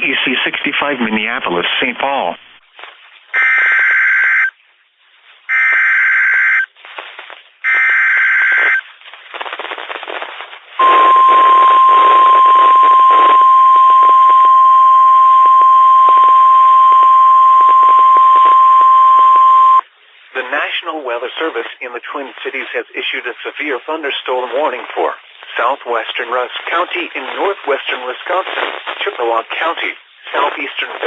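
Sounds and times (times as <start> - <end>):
radio static: 7.7 - 8.8, 10.8 - 19.8, 20.4 - 31.0
steady warning alarm tone: 10.8 - 19.8.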